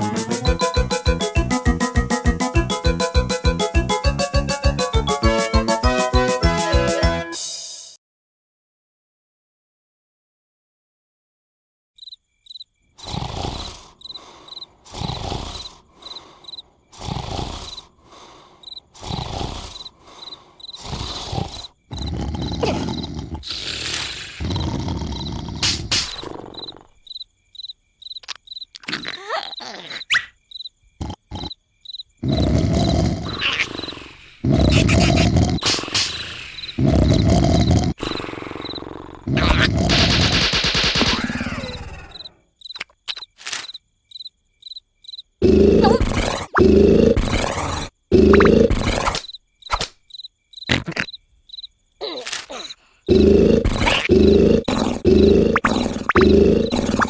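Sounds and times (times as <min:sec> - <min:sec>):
loud low cartoon sound: 0:00.0 - 0:07.2
cricket chirping: 0:12.0 - 0:57.0
sharp clicks: 0:39.5 - 0:41.5.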